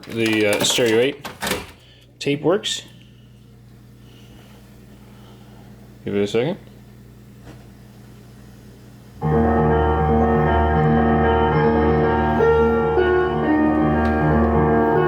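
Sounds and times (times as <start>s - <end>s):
low hum: 9.2s - 15.0s
piano music through speakers: 9.2s - 15.0s.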